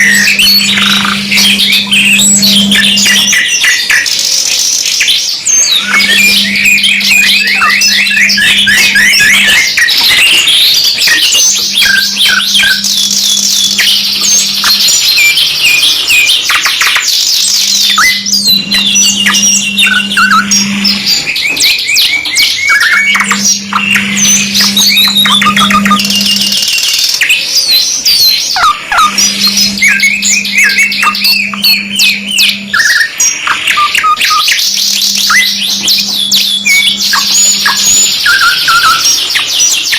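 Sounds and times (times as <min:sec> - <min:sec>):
low steady hum: 0:00.0 - 0:03.5, 0:05.6 - 0:15.3, 0:17.9 - 0:21.4, 0:22.9 - 0:26.8, 0:28.7 - 0:34.2
canaries singing: 0:00.0 - 0:39.9.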